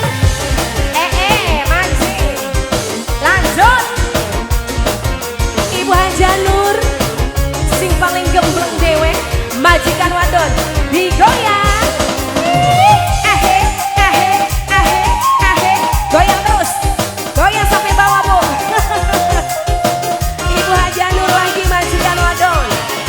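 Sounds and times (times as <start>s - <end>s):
band playing with drum and bass: 0.0s - 23.0s
ornamented melody: 11.6s - 21.9s.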